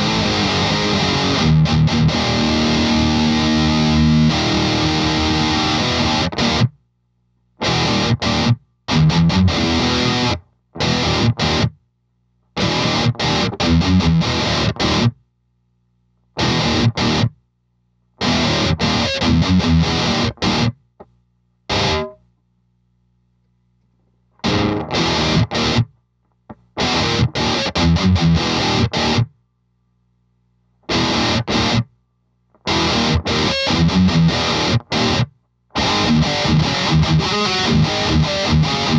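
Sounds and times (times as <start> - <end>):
distorted electric guitar riffs: 0.0 - 6.8, 7.6 - 11.8, 12.6 - 15.2, 16.4 - 17.4, 18.2 - 20.8, 21.7 - 22.3, 24.4 - 29.4, 30.8 - 31.9, 32.6 - 38.9.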